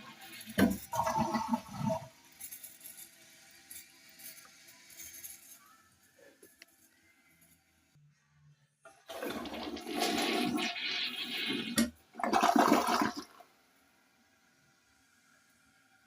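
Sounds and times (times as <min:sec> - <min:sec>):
toilet flushing: 0:00.0 - 0:02.2, 0:09.0 - 0:13.5.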